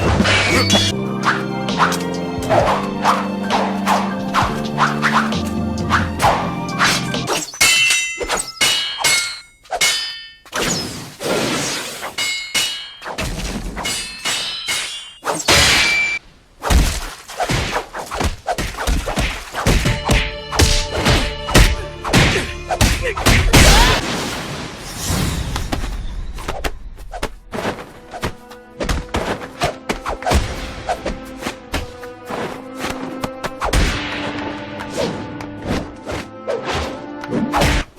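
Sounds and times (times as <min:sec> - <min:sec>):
ringing clashes: 0:07.4 - 0:10.8, 0:12.1 - 0:16.2
fight hits and thuds: 0:12.6 - 0:24.1, 0:33.6 - 0:34.2, 0:37.6 - 0:37.9.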